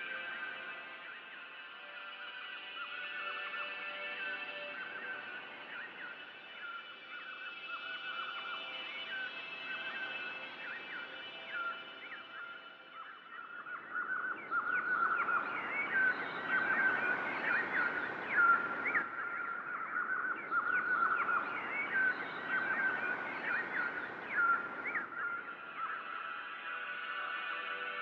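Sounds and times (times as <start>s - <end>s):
small birds chirping: 9.0s - 26.0s
thin steady bird trill: 9.0s - 26.0s.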